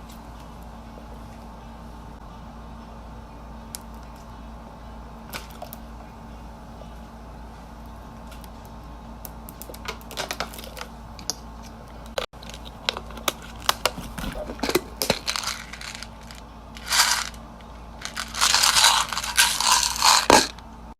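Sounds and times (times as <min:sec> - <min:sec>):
steady low hum: 0:00.0 - 0:20.9
crinkling: 0:12.4 - 0:17.4, 0:18.0 - 0:20.6.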